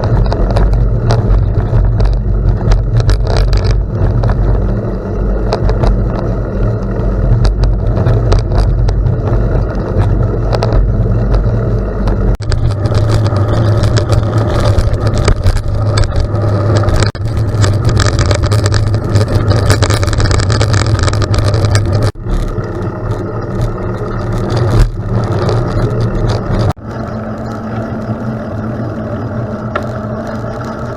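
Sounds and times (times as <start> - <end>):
road and wind rumble: 0.0 - 30.9.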